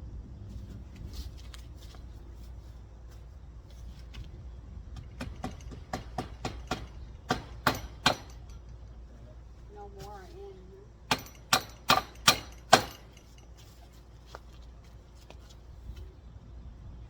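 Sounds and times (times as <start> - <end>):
steady low rumble: 0.0 - 17.0
sharp knocks: 5.0 - 8.6, 11.1 - 13.2.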